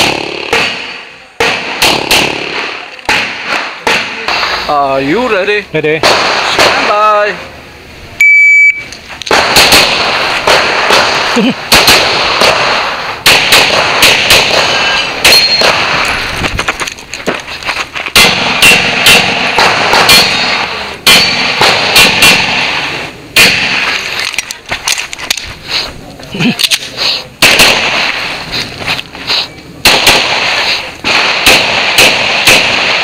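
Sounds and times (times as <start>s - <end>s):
pistol shots: 0.0s - 4.6s, 6.0s - 7.2s, 9.2s - 16.3s, 18.1s - 24.2s, 27.4s - 28.3s, 29.8s - 33.0s.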